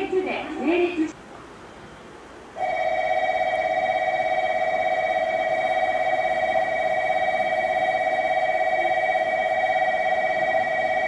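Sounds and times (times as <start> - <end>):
electric warning bell ringing: 2.6 - 11.0.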